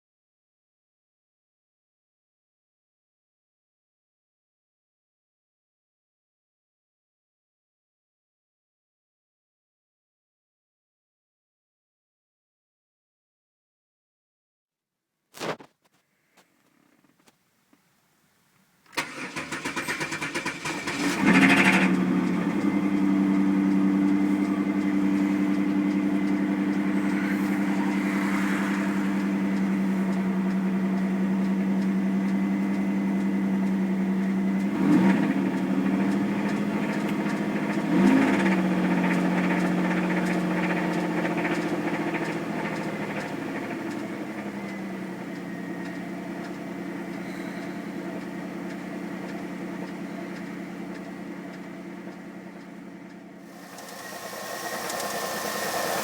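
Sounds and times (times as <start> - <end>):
car engine idling and revving: 19.0 - 56.0.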